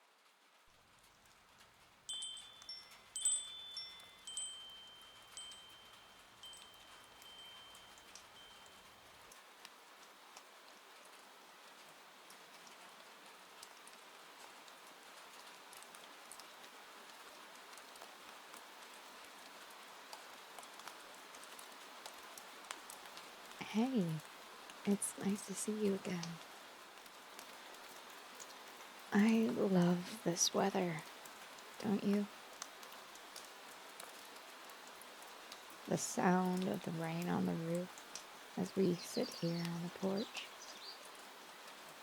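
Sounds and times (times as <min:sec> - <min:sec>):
rain hiss: 0:00.0 - 0:42.0
metal chimes ringing: 0:02.1 - 0:08.8.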